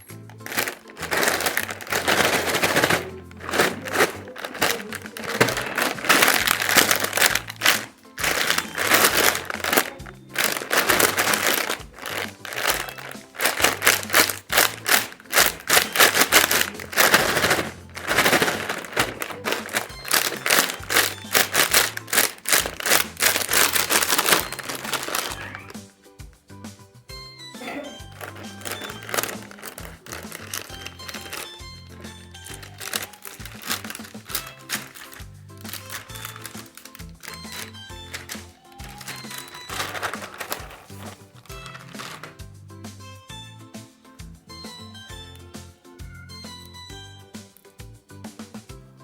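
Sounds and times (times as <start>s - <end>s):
plastic packets crinkling: 0.0s - 25.9s, 27.6s - 42.5s
background music with bass: 0.0s - 49.0s.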